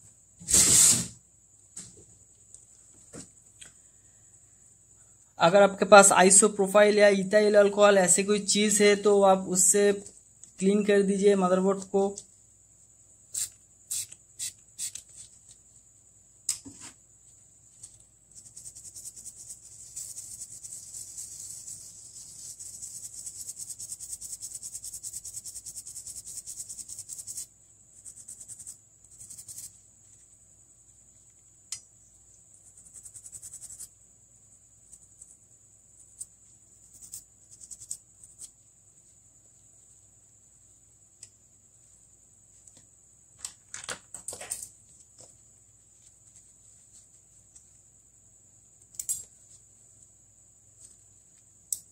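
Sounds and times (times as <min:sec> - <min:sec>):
brush scrubbing circuit board: 0:18.3 - 0:29.8, 0:32.6 - 0:34.0.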